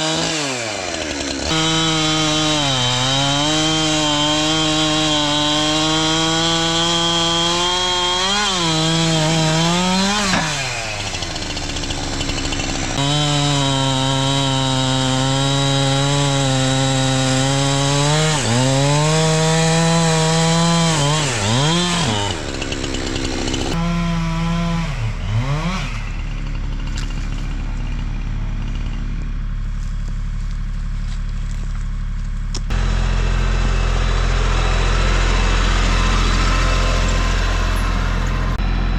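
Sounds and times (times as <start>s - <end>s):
chainsaw cutting log: 0.0s - 38.9s
deeper engine running: 20.7s - 38.9s
low hum: 25.9s - 38.9s.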